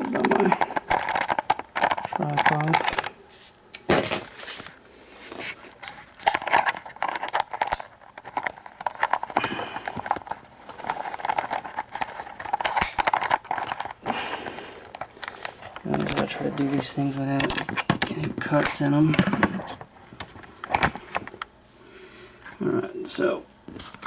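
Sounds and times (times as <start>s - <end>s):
clicking and rattling of hard gear: 0.0s - 3.1s, 6.2s - 21.3s.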